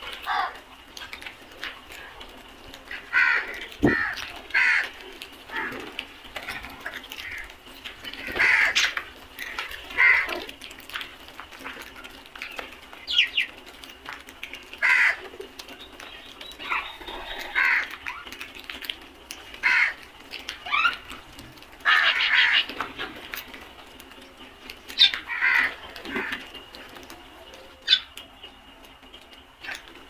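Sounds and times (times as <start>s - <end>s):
crows cawing: 0.2s - 0.6s, 2.9s - 6.0s, 6.8s - 7.5s, 8.1s - 10.6s, 14.8s - 15.3s, 16.6s - 18.3s, 19.6s - 21.0s, 21.8s - 23.1s, 25.0s - 26.6s.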